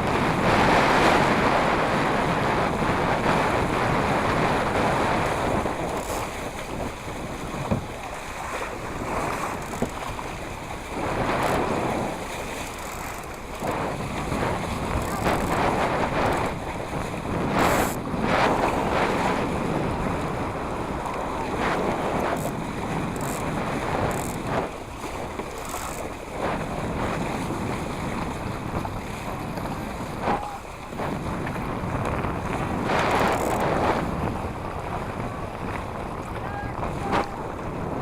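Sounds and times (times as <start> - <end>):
water splashing around boat: 0.0 - 38.0
wind buffeting microphone: 0.0 - 38.0.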